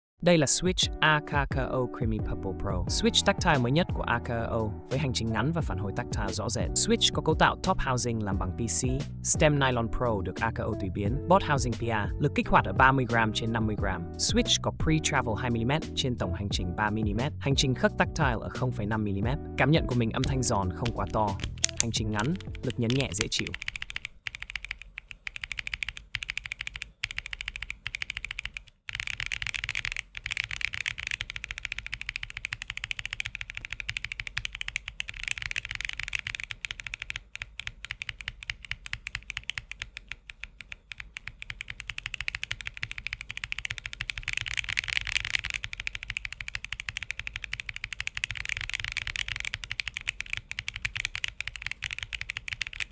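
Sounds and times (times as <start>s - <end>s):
mechanical keyboard typing: 20.2s - 52.9s.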